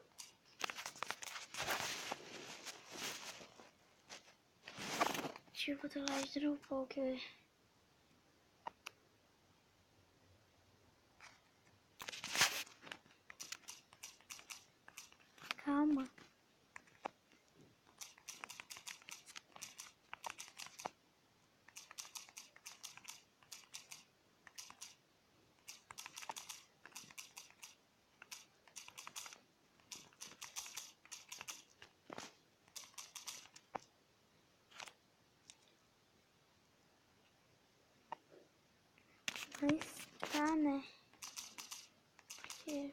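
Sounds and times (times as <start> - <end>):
typing taps on touchscreen: 13.3 - 15.5, 17.9 - 20.9, 21.7 - 25.0, 25.6 - 31.7, 32.7 - 33.8, 41.2 - 42.8.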